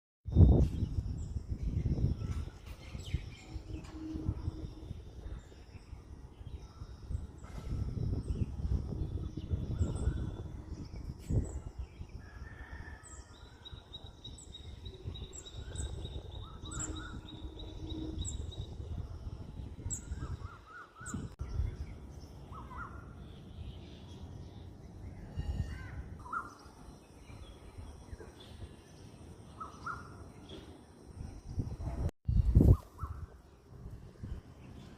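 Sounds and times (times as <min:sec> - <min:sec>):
birds chirping: 0:13.4 - 0:34.9.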